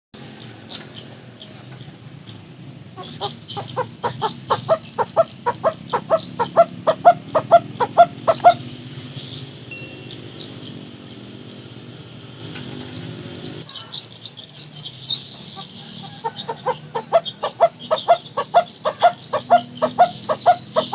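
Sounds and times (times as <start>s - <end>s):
barbet calling hollow notes: 9.7s - 11.4s.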